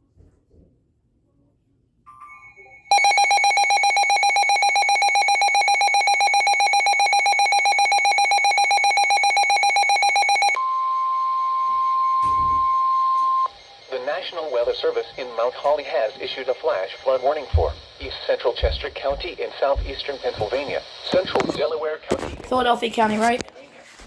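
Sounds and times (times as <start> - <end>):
steady high alarm tone: 2.1 - 21.2
fast pulsing alarm beep: 2.2 - 20.7.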